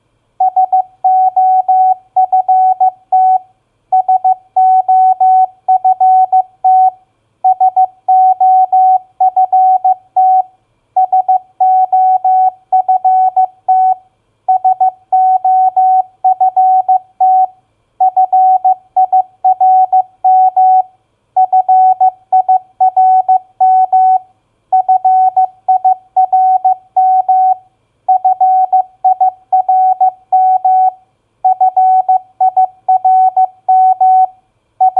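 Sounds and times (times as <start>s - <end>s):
morse code beeps: 0.4s - 3.4s, 24.8s - 34.9s.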